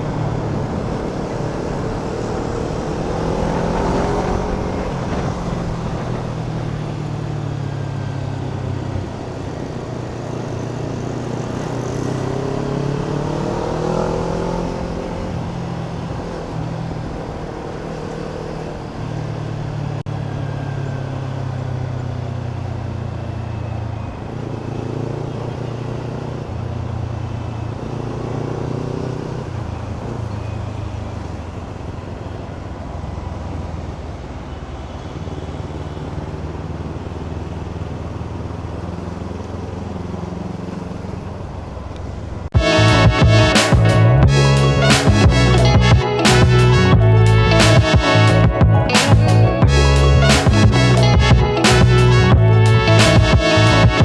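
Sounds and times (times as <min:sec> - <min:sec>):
motorcycle engine revving: 0:00.0 - 0:54.0.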